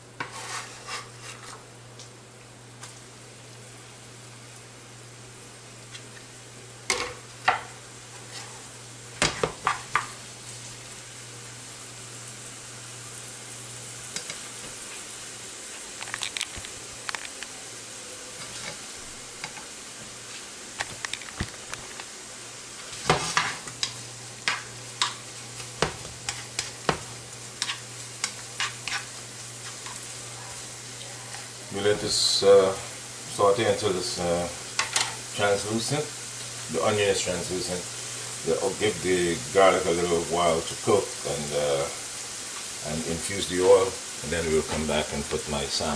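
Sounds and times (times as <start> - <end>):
food sizzling in hot oil: 0.0 - 45.9
utensil scraping a pan: 0.2 - 1.7, 6.9 - 10.1, 18.4 - 19.6, 22.8 - 30.1.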